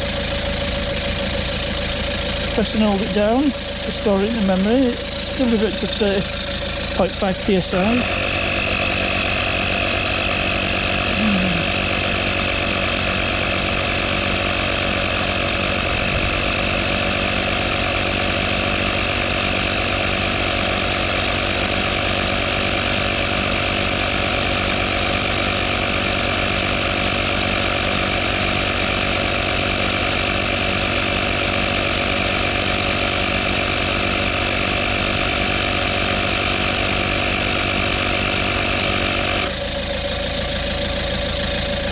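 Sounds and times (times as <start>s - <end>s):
tyre inflator compressor running: 0.0s - 41.9s.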